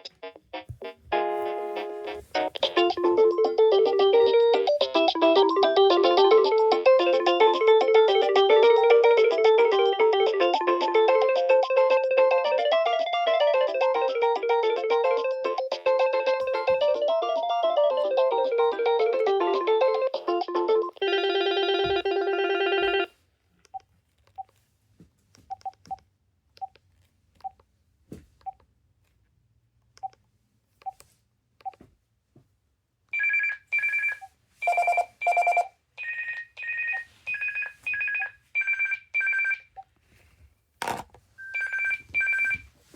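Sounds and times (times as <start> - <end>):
ringtone of repeated notes: 1.2 - 23.1, 33.2 - 39.7, 41.4 - 42.7
melodic telephone ringtone: 2.4 - 23.1, 33.2 - 39.7, 41.4 - 42.7
warbling two-tone telephone ring: 33.2 - 39.6, 41.4 - 42.6.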